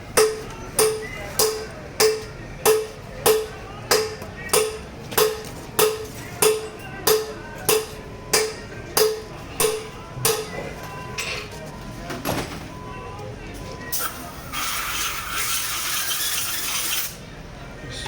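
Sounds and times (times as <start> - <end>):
hammer striking metal: 0.1 - 10.6.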